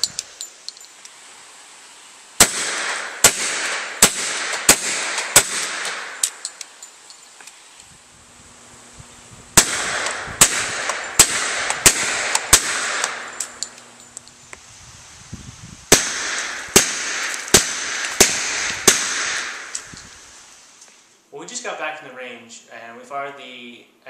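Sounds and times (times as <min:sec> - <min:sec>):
suppressed pistol shots: 0:02.4 - 0:06.6, 0:09.6 - 0:13.8, 0:15.9 - 0:19.9.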